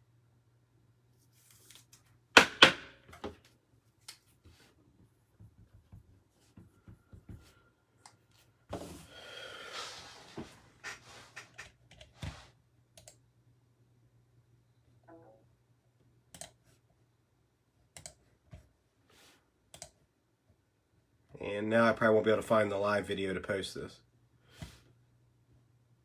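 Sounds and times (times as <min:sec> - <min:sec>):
mouse and keyboard clicks: 0:16.4 - 0:16.6.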